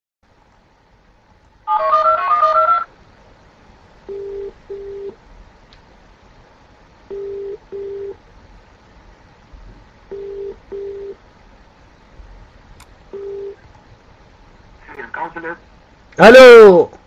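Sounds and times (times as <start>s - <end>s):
phone ringback tone: 4.1s - 5.1s, 7.1s - 8.2s, 10.1s - 11.2s, 13.2s - 13.6s.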